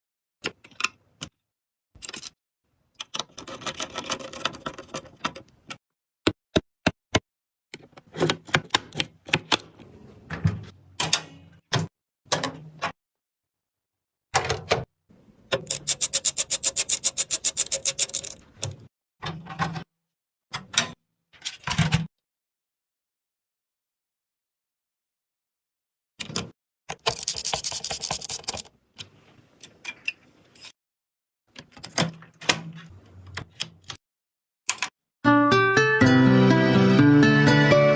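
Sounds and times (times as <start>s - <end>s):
computer hardware clicks and clacks: 3.0s - 5.8s, 15.6s - 18.9s, 26.2s - 28.7s.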